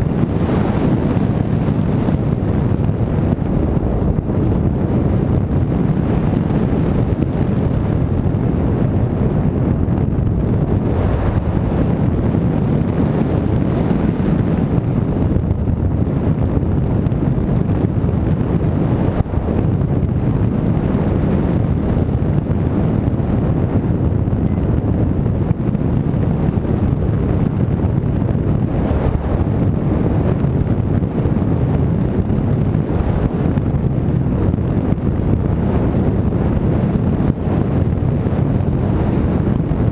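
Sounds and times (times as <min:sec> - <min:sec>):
wind buffeting microphone: 0:00.0 - 0:39.9.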